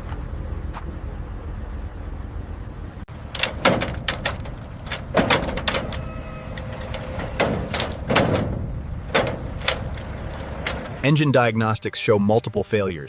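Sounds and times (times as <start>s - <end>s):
steady low rumble: 0.0s - 11.1s
sharp knocks and clatters: 3.1s - 11.0s.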